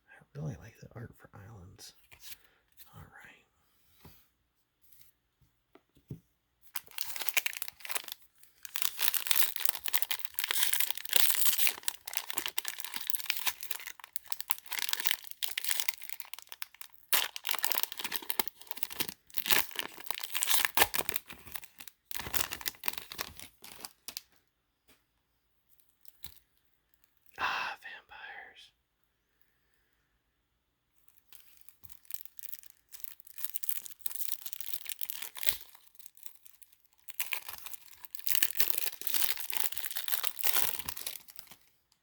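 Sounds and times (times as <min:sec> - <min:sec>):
plastic wrapper tearing and crinkling: 0:06.7 - 0:24.4, 0:31.0 - 0:41.7.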